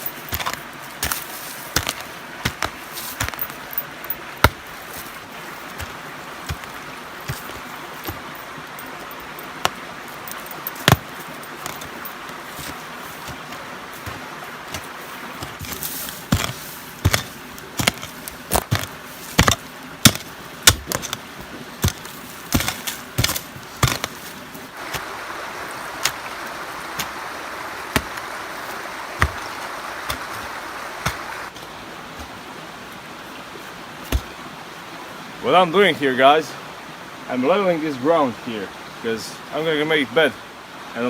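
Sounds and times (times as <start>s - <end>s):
sharp knocks and chops: 0.2s - 3.6s, 4.4s - 4.7s, 5.8s - 8.3s, 12.6s - 21.2s, 21.8s - 24.2s, 34.1s - 34.4s.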